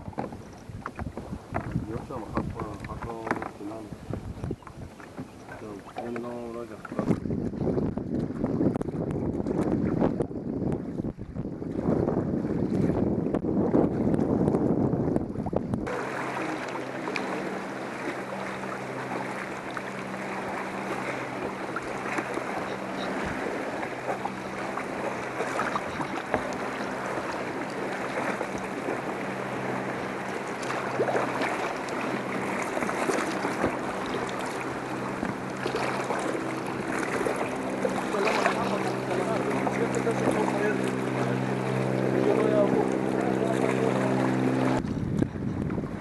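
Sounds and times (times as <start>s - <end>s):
wind buffeting microphone: 0.0s - 46.0s
engine running steadily: 12.6s - 46.0s.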